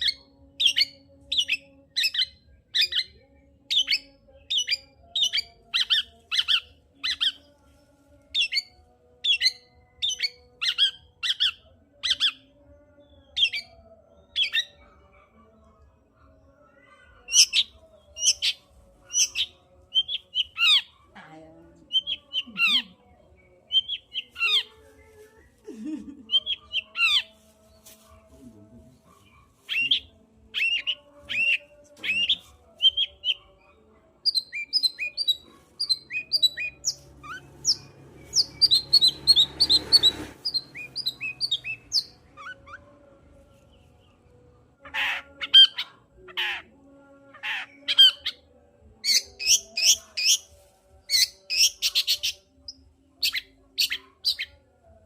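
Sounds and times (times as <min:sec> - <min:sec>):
scratchy rustle: 0:27.1 - 0:29.8.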